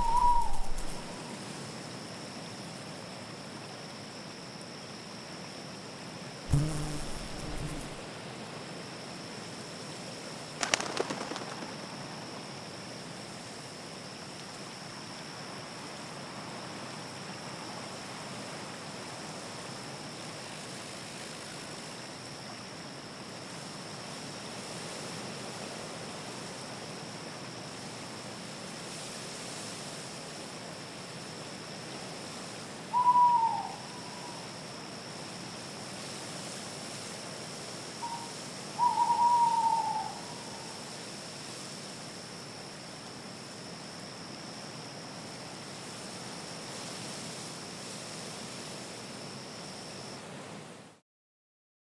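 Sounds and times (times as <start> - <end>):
thin high tone: 0.0 - 1.1, 6.5 - 8.0
owl hooting: 0.0 - 1.2, 32.9 - 34.4, 38.0 - 40.8
night ambience hiss: 0.0 - 51.0.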